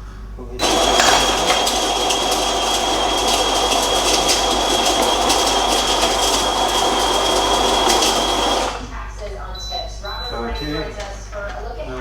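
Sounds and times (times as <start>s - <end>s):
coffee grinder whirring: 0.6s - 9.0s.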